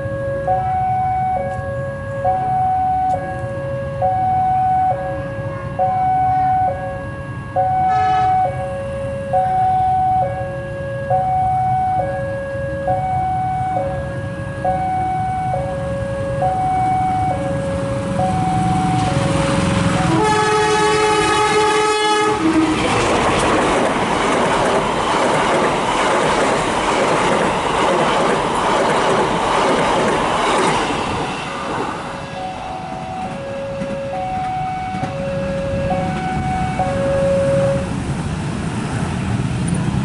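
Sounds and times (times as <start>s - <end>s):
locomotive horn: 0.0s - 23.2s, 32.4s - 37.9s
two-tone railway warning alarm: 0.0s - 38.1s
train wheels clattering: 22.5s - 36.5s.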